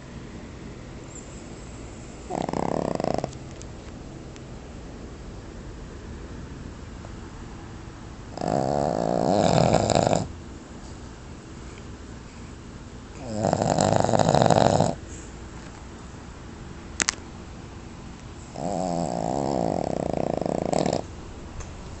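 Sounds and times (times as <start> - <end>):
pet snoring loudly: 2.2 - 3.4, 8.3 - 10.3, 13.2 - 15.0, 18.5 - 21.1.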